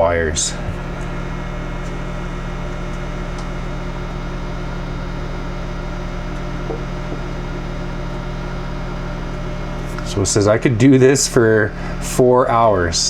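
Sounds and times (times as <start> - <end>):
microwave oven humming: 0.0 - 13.0.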